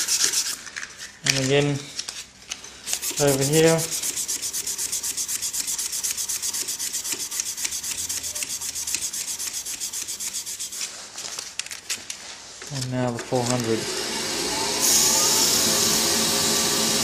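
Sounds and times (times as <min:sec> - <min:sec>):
sandpaper rubbing on wood: 0:00.0 - 0:00.6, 0:02.9 - 0:11.1.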